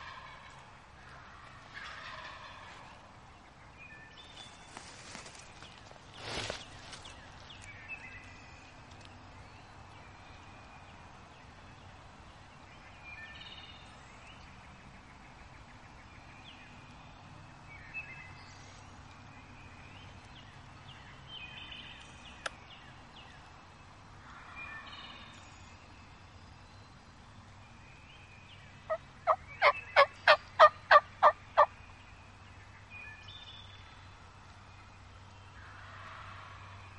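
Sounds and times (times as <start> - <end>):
turkey gobble: 0.0 - 0.6, 1.8 - 2.8, 28.9 - 31.7
songbirds chirping: 0.0 - 36.9.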